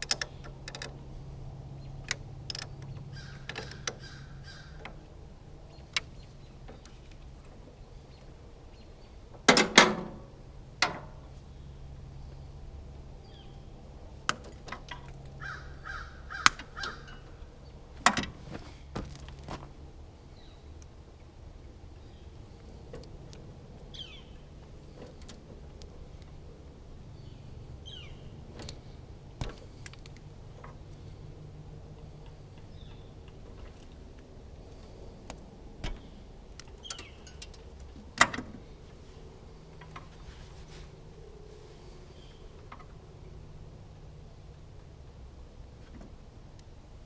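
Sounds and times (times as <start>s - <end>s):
low steady hum: 0.0s - 47.0s
bird calling: 1.7s - 7.0s, 14.9s - 17.8s, 23.9s - 24.5s, 27.2s - 28.9s, 35.9s - 37.5s, 41.2s - 43.2s
sharp knocks and clanks: 9.4s - 11.2s.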